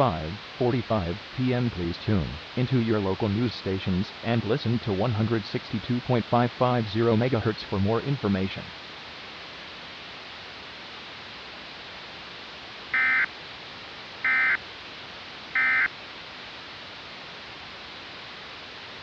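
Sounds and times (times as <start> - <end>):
steady hiss: 0.0 - 19.0
short digital data bursts: 13.0 - 13.3, 14.2 - 14.6, 15.6 - 15.9.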